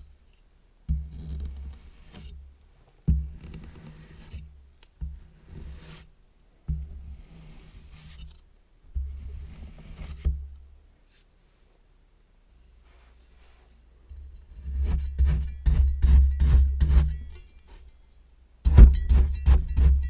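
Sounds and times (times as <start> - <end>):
metal tool scraping sand: 14.5 - 18.1, 18.7 - 20.0.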